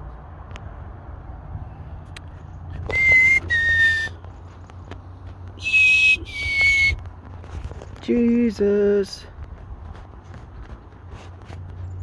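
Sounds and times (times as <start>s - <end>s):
person whistling: 2.9s - 4.2s, 5.6s - 7.0s.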